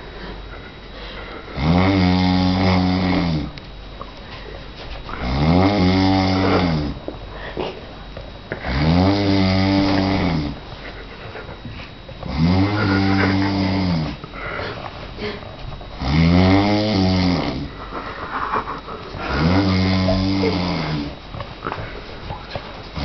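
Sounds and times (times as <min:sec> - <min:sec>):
person snoring loudly: 0:01.5 - 0:03.5, 0:05.2 - 0:07.0, 0:08.6 - 0:10.6, 0:12.2 - 0:14.2, 0:16.0 - 0:17.8, 0:19.2 - 0:21.2
soft breathing: 0:07.2 - 0:08.0, 0:14.1 - 0:16.0.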